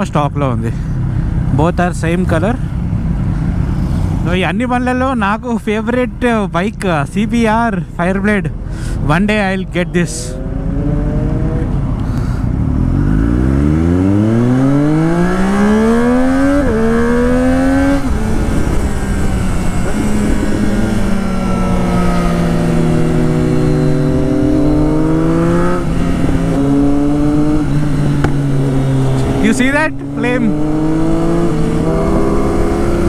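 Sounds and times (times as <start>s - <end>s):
motorcycle engine accelerating: 10.1s - 33.0s.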